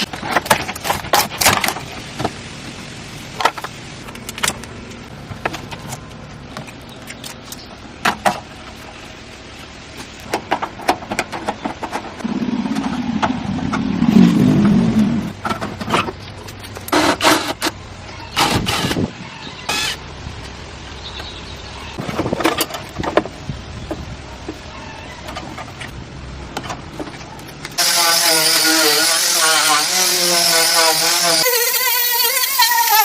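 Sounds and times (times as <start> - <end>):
low motor sound: 12.1 - 17.0.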